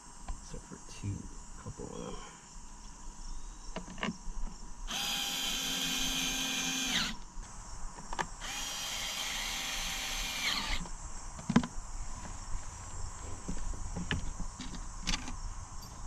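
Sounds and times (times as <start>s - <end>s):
electric drill whining: 4.9s - 7.2s, 8.4s - 10.9s.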